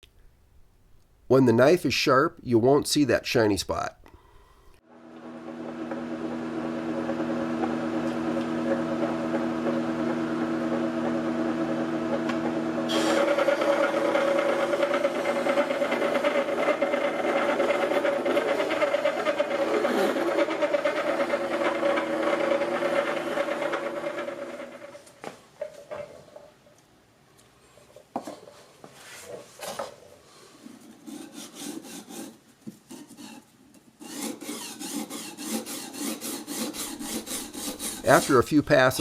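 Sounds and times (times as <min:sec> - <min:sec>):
grinder motor humming: 0:04.5 - 0:25.1, 0:36.4 - 0:39.0
knife grinding on whetstone: 0:12.9 - 0:24.9, 0:31.0 - 0:38.4.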